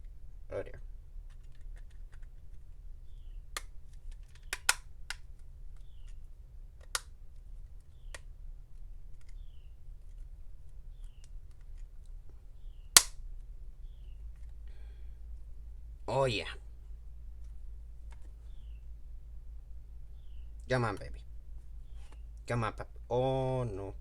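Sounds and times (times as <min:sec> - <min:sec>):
plastic and metal clicks and snaps: 0:03.2 - 0:06.2, 0:06.8 - 0:08.3, 0:12.9 - 0:13.5.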